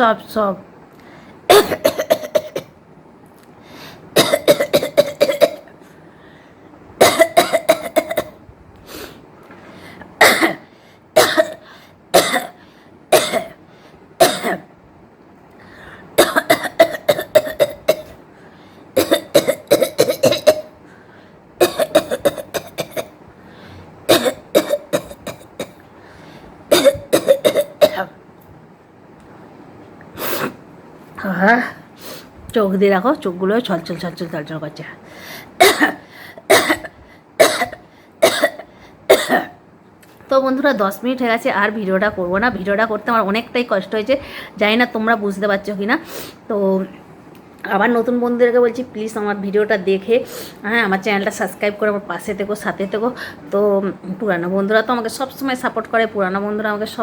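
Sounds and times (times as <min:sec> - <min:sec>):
woman coughing: 0:01.5 - 0:02.7, 0:04.2 - 0:05.7, 0:07.0 - 0:08.4, 0:10.2 - 0:13.6, 0:14.2 - 0:14.7, 0:16.2 - 0:18.2, 0:19.0 - 0:20.8, 0:21.6 - 0:23.2, 0:24.1 - 0:25.8, 0:26.7 - 0:28.2, 0:35.6 - 0:39.6.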